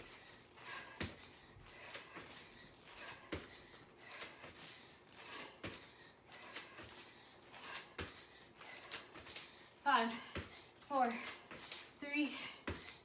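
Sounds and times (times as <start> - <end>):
hard breathing: 0.0 - 13.0
feet thudding on floor: 10.0 - 13.0.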